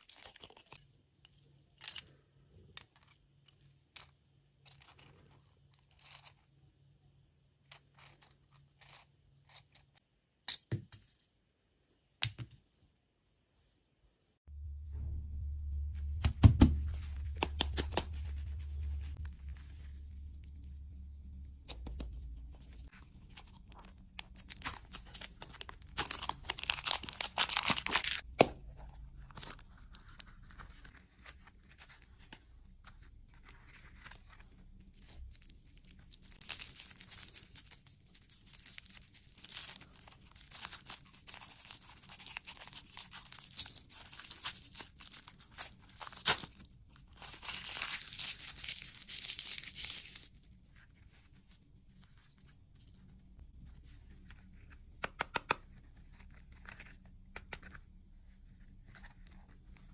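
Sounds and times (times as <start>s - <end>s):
low hum: 14.5s - 31.0s
packaging torn and crinkled: 22.9s - 28.3s, 29.3s - 31.8s, 35.0s - 50.6s.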